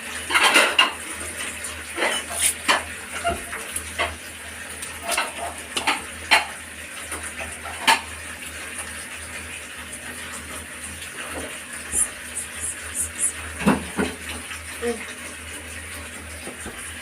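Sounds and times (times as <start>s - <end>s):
utensils clinking and scraping: 1.9s - 2.9s.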